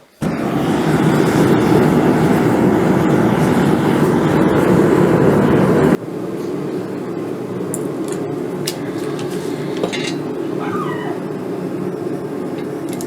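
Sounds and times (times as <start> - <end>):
forge rushing roar: 0.2 - 6.0.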